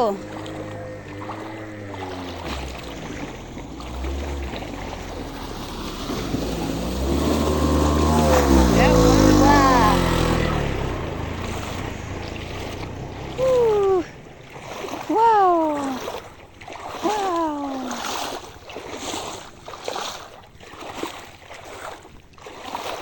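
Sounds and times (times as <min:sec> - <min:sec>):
feet splashing through water: 0:00.0 - 0:23.0
short falling cries: 0:07.0 - 0:11.4, 0:12.8 - 0:14.3.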